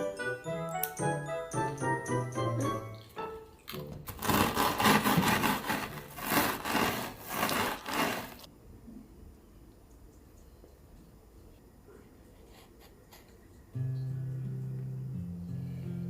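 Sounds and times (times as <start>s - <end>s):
background music: 0.0s - 3.9s
rough scraping strokes: 4.2s - 8.5s.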